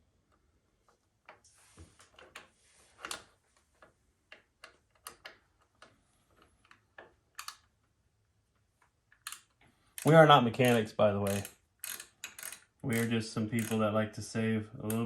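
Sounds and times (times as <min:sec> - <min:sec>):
light metallic wrench clicks: 0:09.2 - 0:13.8.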